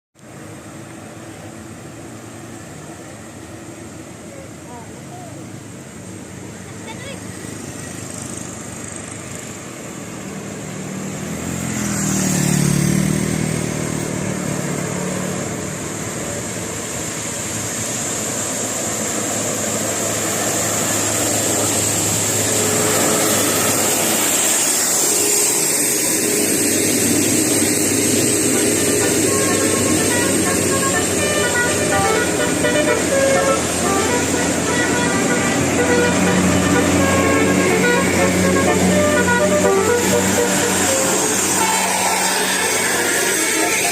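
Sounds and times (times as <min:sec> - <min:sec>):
large vehicle engine passing: 0:00.2 - 0:43.9
road traffic: 0:00.2 - 0:43.9.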